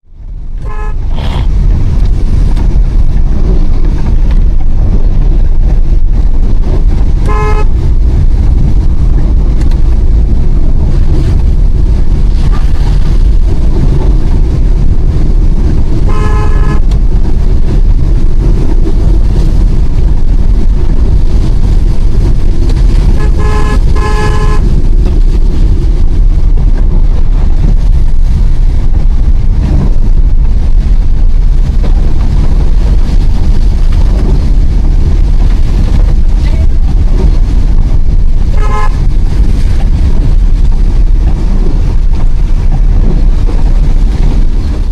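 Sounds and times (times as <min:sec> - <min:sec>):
car driving in heavy rain: 0:00.0 - 0:44.9
car horn beeps: 0:00.6 - 0:01.5, 0:07.2 - 0:07.8, 0:16.0 - 0:17.0, 0:23.1 - 0:24.8, 0:38.5 - 0:39.0.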